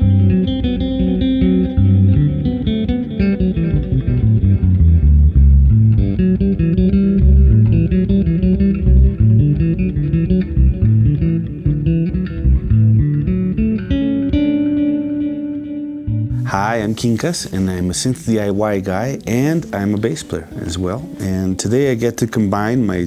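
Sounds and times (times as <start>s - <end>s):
electric bass with delay effect: 0.0s - 16.9s.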